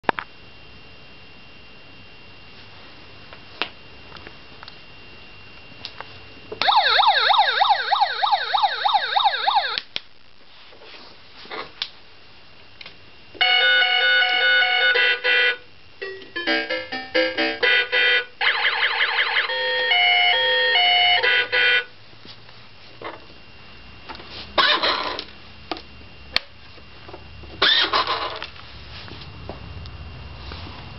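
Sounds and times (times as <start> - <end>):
electronic police siren wail: 6.6 - 9.8, 13.4 - 15.6, 17.6 - 21.9
beeping electronic tune: 16.0 - 18.2.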